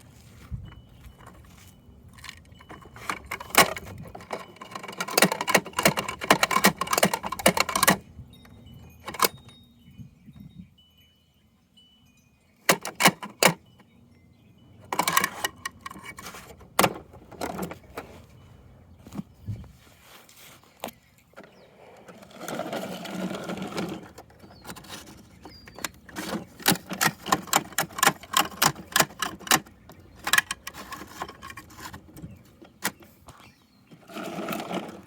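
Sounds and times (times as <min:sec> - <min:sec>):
small hard objects rattling: 0:34.0 - 0:35.0.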